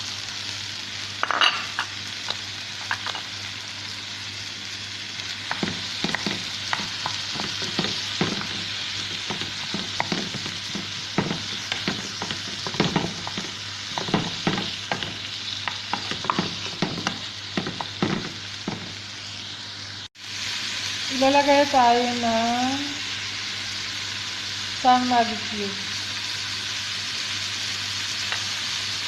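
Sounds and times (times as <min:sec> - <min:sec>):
food sizzling in oil: 0:00.0 - 0:29.0
utensil scraping and knocking pan: 0:05.5 - 0:18.9.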